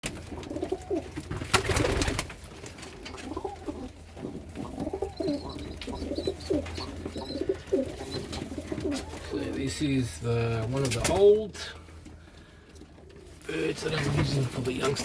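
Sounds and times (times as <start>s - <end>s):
pigeons cooing: 0.1s - 2.3s, 3.0s - 11.1s.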